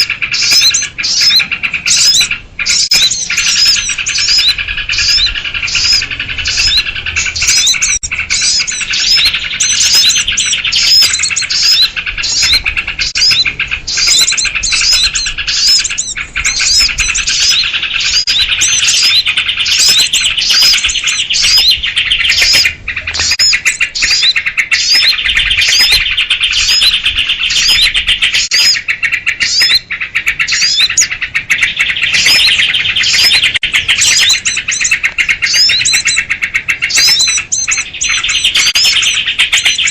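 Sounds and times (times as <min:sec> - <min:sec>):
small birds chirping and scolding: 0:00.0 - 0:39.9.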